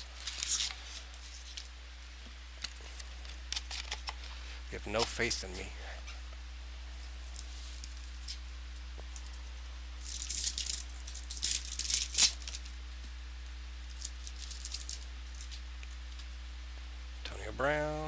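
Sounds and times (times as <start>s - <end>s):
card packaging crinkling: 0.0s - 1.8s, 2.6s - 5.7s, 10.0s - 12.8s, 13.9s - 15.6s
low electrical hum: 0.0s - 18.0s.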